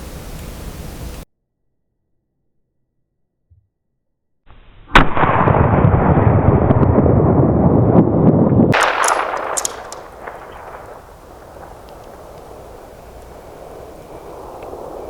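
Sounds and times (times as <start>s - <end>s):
rifle shot: 4.9s - 6.7s, 8.7s - 15.0s
sharp clicks: 8.8s - 15.0s.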